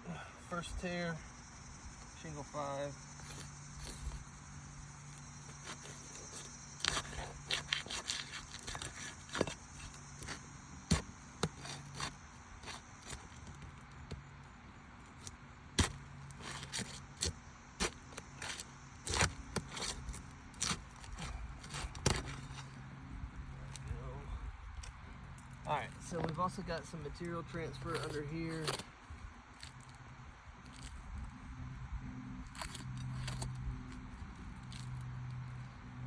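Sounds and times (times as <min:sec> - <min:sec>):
pry bar clicking and scraping shingles: 0:03.1 - 0:22.8, 0:24.8 - 0:30.0, 0:32.4 - 0:35.6.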